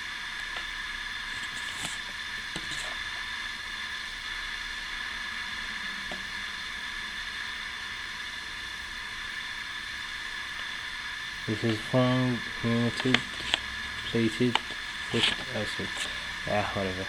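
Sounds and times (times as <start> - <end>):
recording hiss: 0.0 - 17.0.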